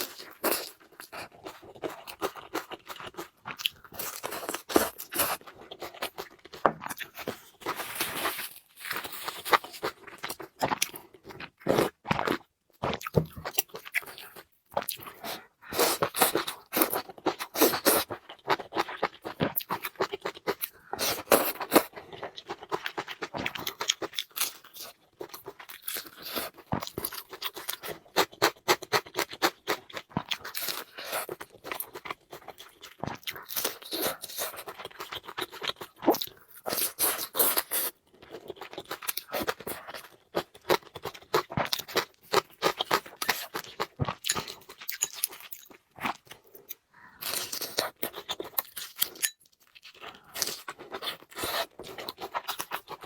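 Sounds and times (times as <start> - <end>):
person chewing and crunching food: 0.0 - 53.0.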